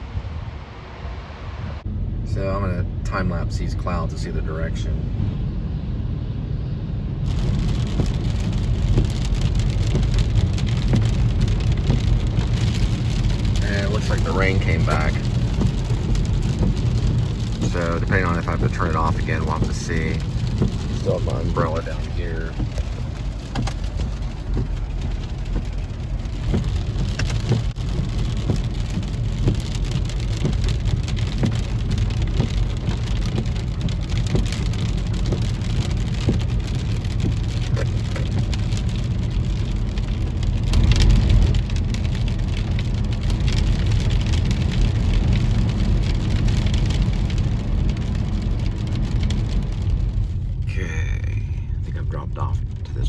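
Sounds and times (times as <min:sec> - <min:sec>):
low rumble: 0:00.0 - 0:53.0
rain falling: 0:07.2 - 0:53.0.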